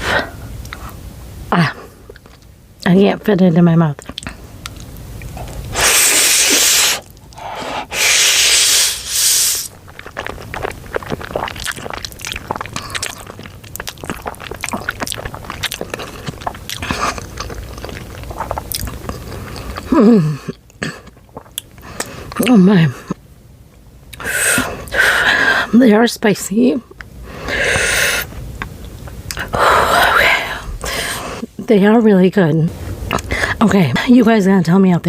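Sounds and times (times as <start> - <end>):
wet chewing: 4.0 - 22.6
noodle slurping: 5.7 - 20.0.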